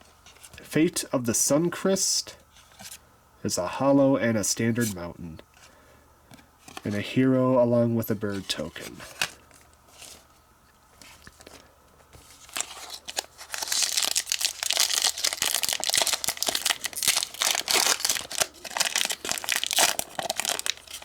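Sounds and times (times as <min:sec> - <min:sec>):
foil wrapper crinkling and tearing: 0:12.3 - 0:21.0.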